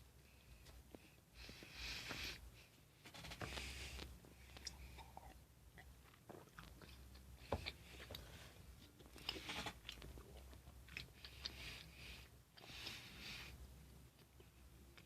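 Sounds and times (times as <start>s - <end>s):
person chewing food: 3.2s - 13.2s.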